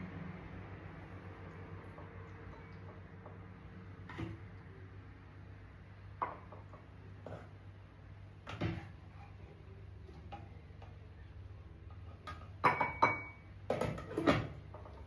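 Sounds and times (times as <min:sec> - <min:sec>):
utensil clinking against dishes: 0:12.0 - 0:14.9.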